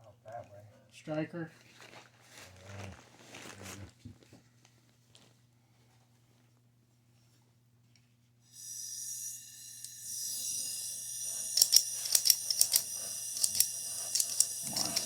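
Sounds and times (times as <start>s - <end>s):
gas torch hissing: 8.5s - 15.0s
flint striker clicks: 11.6s - 15.0s.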